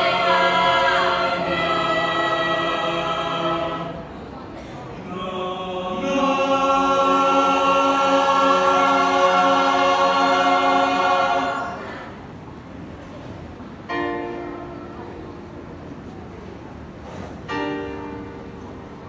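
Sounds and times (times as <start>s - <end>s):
voices singing in harmony: 0.0s - 4.3s, 5.0s - 12.3s.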